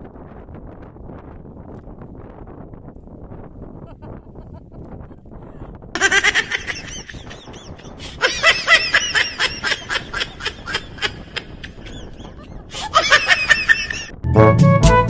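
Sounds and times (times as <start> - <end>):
high-pitched rapid laughter: 6.0 - 14.1.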